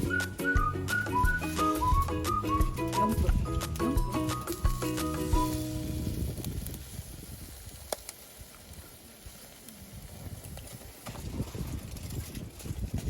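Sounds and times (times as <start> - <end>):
background music: 0.0 - 5.8
wind rumble on microphone: 0.0 - 13.0.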